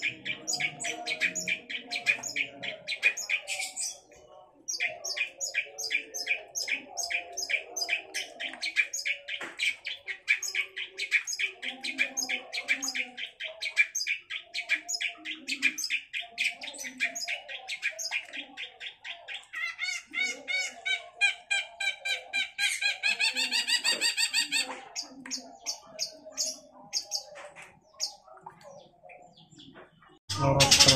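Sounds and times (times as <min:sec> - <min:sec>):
bird singing sharp repeated notes: 0:00.0 - 0:21.7, 0:23.5 - 0:30.9.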